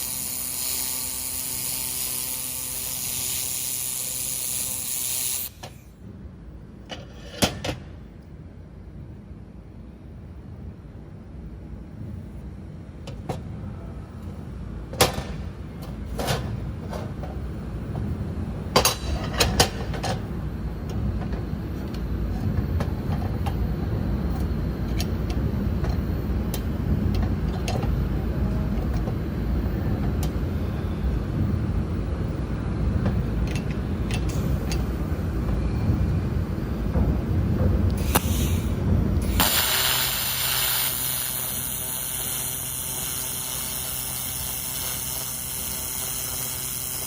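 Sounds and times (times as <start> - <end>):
laser welder rushing noise: 0.0 - 5.8, 38.0 - 47.0.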